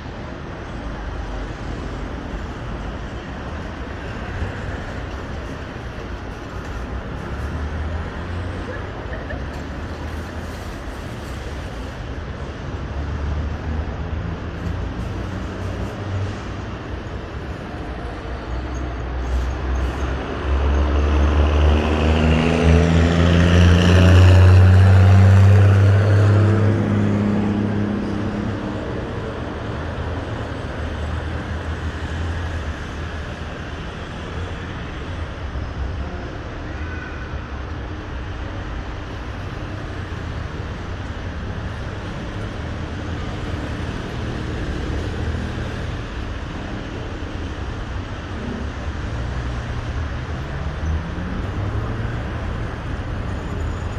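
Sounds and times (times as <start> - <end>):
road traffic hum: 0.0 - 53.9
heavy vehicle passing: 20.0 - 35.1.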